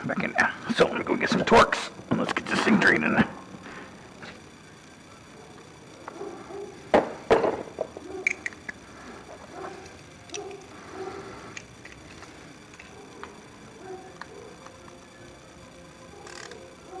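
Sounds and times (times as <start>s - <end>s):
tools clicking and rattling: 8.2s - 8.8s, 9.6s - 10.7s, 11.5s - 13.4s.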